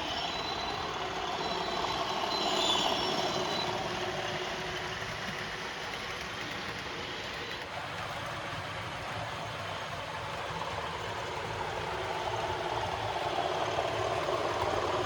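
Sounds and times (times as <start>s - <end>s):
model train running: 0.0s - 15.0s.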